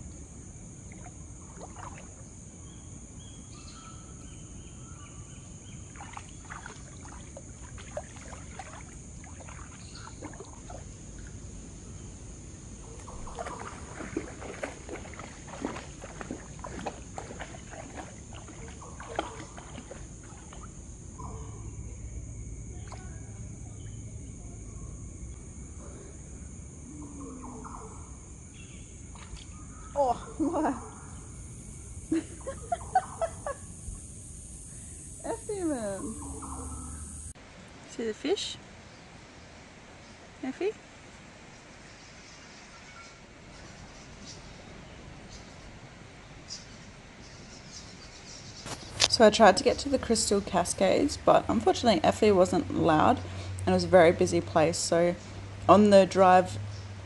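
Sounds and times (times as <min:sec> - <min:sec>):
high-pitched insect drone: 0:00.0 - 0:37.4, 0:48.5 - 0:57.0
water splashing in a creek: 0:00.8 - 0:02.2, 0:05.8 - 0:11.4, 0:13.0 - 0:20.8, 0:29.1 - 0:29.6.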